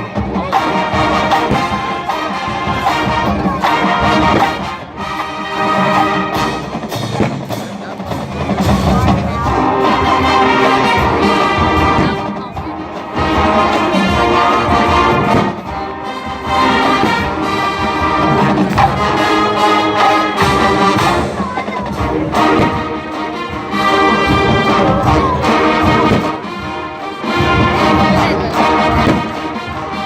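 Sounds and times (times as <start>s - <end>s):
brass chords: 0.0s - 30.0s
marching band playing: 0.0s - 30.0s.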